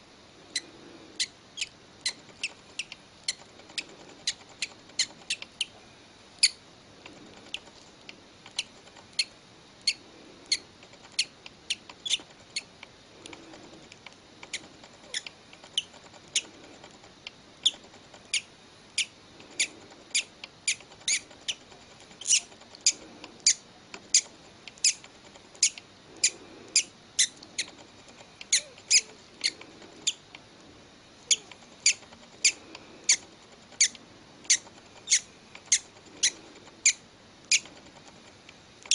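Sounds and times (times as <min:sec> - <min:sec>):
bird chick peeping: 0:00.5 - 0:05.8, 0:06.4 - 0:06.6, 0:08.5 - 0:13.6, 0:31.3 - 0:37.7.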